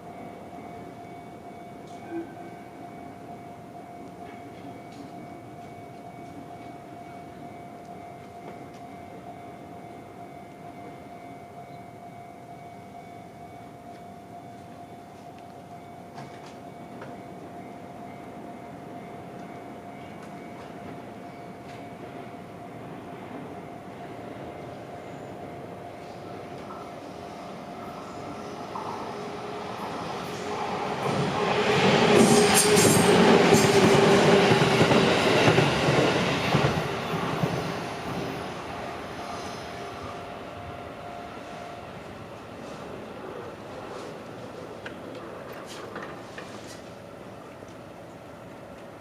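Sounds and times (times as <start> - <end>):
electric train rumble: 0.0 - 49.0
train wheels rumbling on rails: 26.0 - 40.4, 42.0 - 47.8
wheels clicking over rail joints: 44.8 - 46.9.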